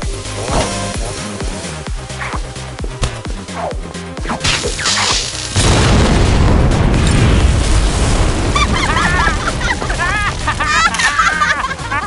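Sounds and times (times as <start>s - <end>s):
music: 0.0s - 12.0s
heavy rumble: 5.2s - 12.0s
explosion boom: 5.6s - 10.7s.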